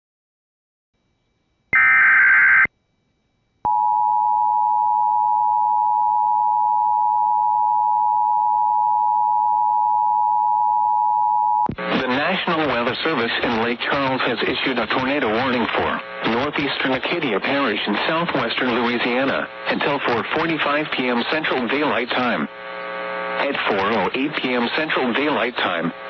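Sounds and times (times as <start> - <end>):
digital header data screech: 1.8 - 2.7.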